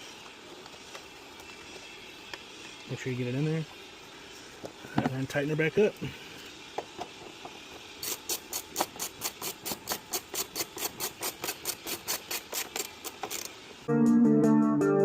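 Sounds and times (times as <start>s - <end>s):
ratchet wrench clicking: 6.4s - 13.6s.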